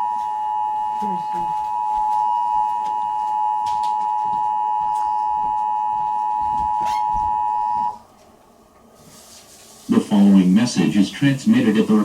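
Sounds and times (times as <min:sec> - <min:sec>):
loud two-tone electronic alert tone: 0:00.0 - 0:08.0.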